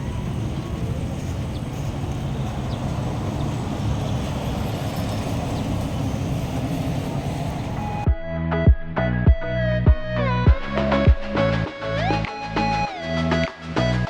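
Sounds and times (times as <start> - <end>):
low rumble of vehicles: 0.0 - 8.1.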